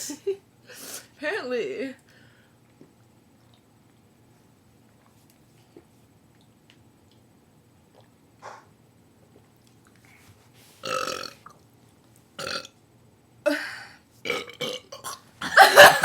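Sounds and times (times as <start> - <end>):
person burping: 12.4 - 12.7, 14.3 - 16.0.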